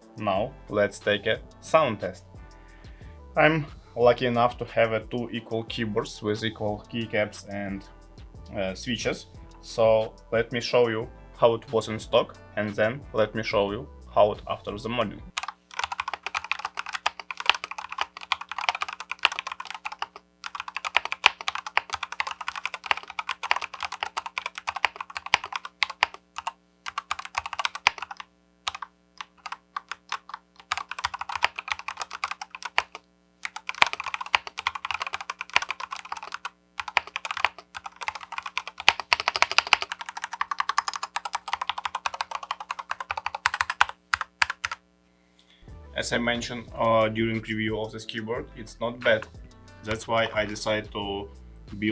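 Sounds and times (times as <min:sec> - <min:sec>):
mechanical keyboard typing: 0:15.3 - 0:44.8.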